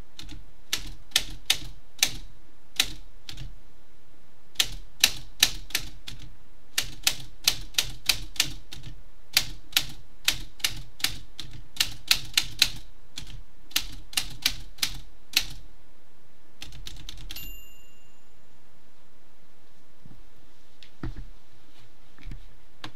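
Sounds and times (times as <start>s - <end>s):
typewriter keys striking: 4.6s - 15.6s, 16.6s - 17.4s
typewriter bell ring: 17.3s - 18.5s.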